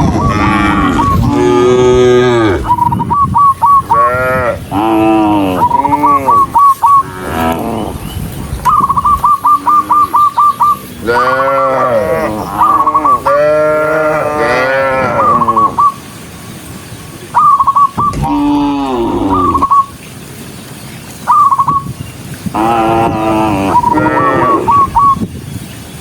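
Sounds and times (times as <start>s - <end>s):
cattle mooing: 0.0s - 2.7s, 3.9s - 8.0s, 11.0s - 15.7s, 18.1s - 19.7s, 22.6s - 24.8s.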